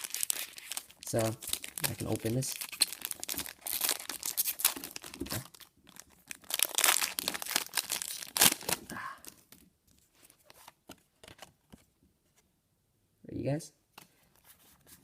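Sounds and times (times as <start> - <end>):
foil wrapper tearing and crinkling: 0.0 - 8.8.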